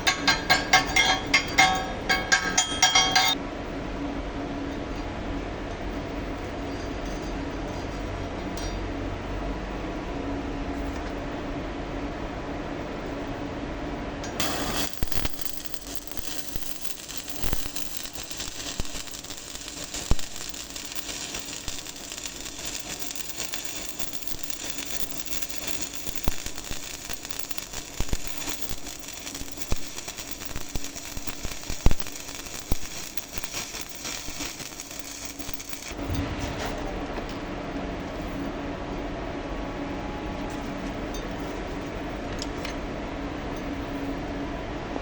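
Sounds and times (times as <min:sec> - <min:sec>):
welding arc crackling: 0:00.0 - 0:03.4, 0:14.4 - 0:36.5.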